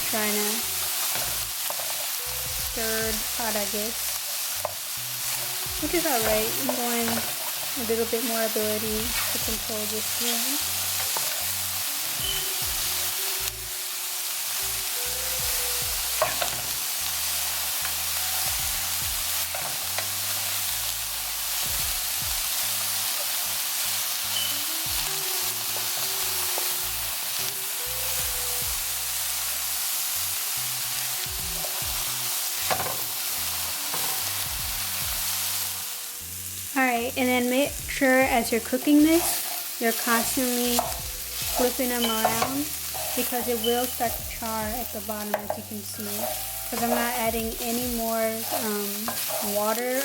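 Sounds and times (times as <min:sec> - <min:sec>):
vegetables sizzling in a pan: 0:00.0 - 0:50.0
utensil scraping a pan: 0:38.3 - 0:50.0.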